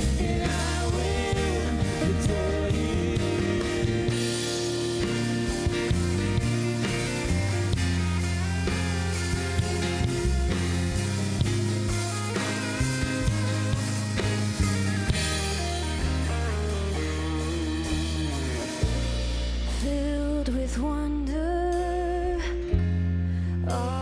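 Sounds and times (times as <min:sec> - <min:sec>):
worship band instrumental: 0:00.0 - 0:20.9.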